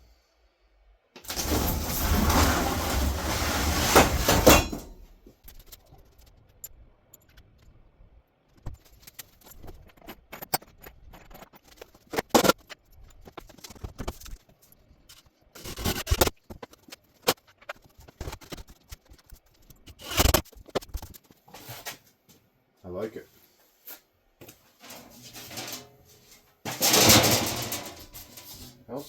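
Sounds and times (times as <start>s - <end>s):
loud clatters: 1.3s - 5.0s, 26.7s - 28.2s.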